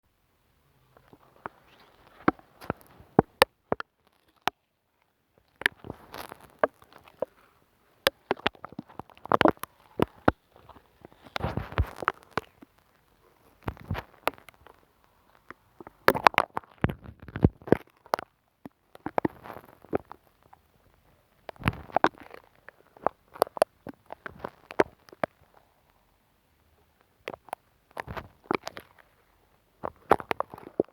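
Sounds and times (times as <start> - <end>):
glue stick crackling on microphone: 1.0 - 4.6, 5.4 - 7.4, 8.0 - 18.3, 29.8 - 30.9.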